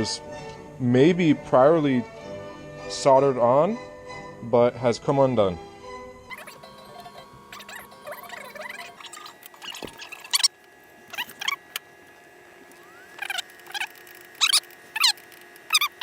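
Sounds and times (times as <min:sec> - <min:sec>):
small animal high-pitched chirps: 0:06.3 - 0:11.6, 0:12.8 - 0:16.0.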